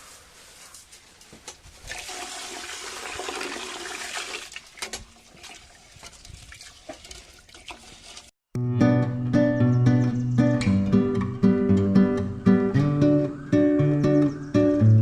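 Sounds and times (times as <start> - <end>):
water pouring and splashing: 1.7 - 8.4
acoustic guitar music: 8.6 - 15.0.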